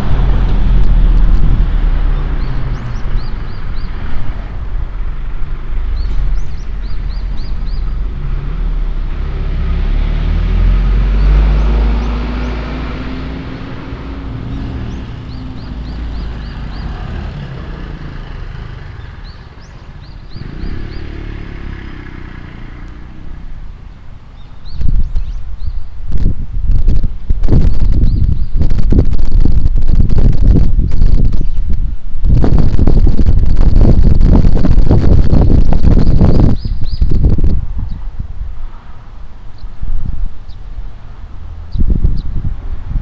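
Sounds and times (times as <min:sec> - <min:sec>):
steady low rumble: 0:00.0 - 0:09.9, 0:10.7 - 0:43.0
vehicle passing on road: 0:00.0 - 0:43.0.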